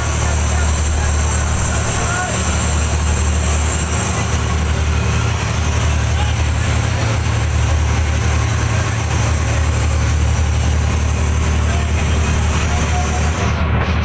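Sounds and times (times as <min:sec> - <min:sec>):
boat engine droning: 0:00.0 - 0:14.0.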